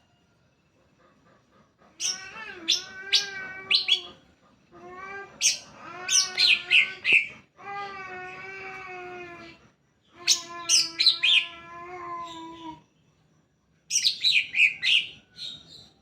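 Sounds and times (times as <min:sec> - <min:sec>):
bird singing: 0:05.4 - 0:16.0.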